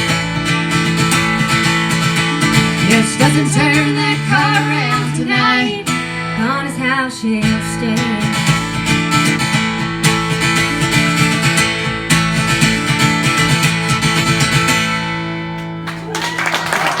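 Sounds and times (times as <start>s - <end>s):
live country-rock band: 0.0s - 6.8s, 7.4s - 15.8s
strummed acoustic guitar: 0.0s - 15.9s
crowd applauding: 15.6s - 17.0s.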